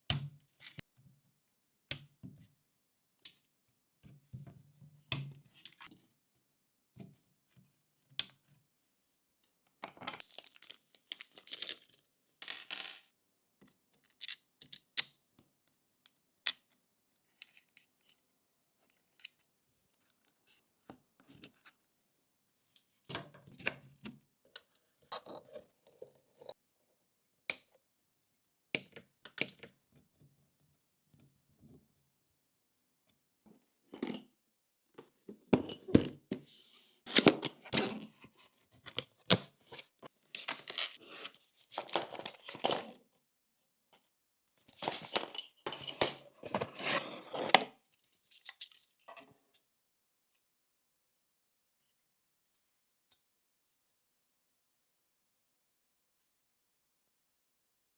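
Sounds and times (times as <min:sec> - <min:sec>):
packaging rustling and scraping: 0:40.4 - 0:42.6.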